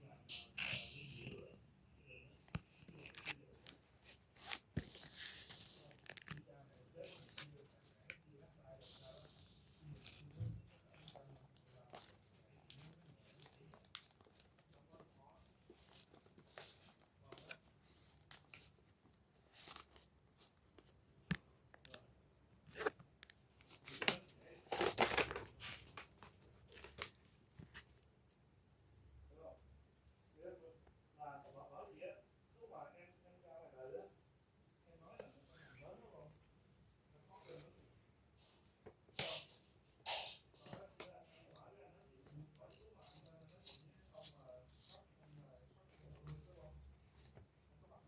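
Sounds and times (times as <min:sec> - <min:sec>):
paper rustling and crinkling: 0:02.5 - 0:21.0, 0:22.7 - 0:28.1, 0:42.2 - 0:47.6.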